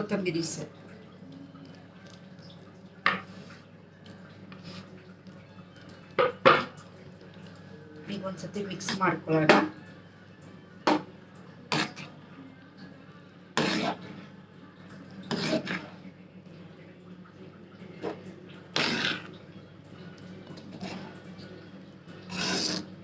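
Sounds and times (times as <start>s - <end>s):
spoon scraping a cooking pot: 3.1s - 3.6s, 11.7s - 12.2s, 13.6s - 14.3s, 15.3s - 16.0s, 18.0s - 19.4s, 20.5s - 21.3s, 22.1s - 23.0s.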